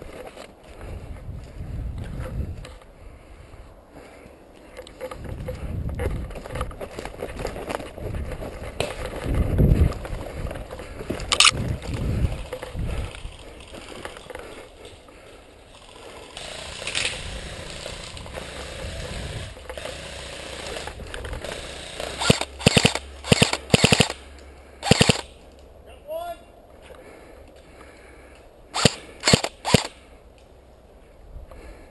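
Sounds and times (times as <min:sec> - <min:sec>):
rustling and handling noise: 0:04.2 - 0:22.3
airsoft gun rapid shots: 0:21.7 - 0:24.2, 0:24.8 - 0:25.3, 0:28.8 - 0:30.0.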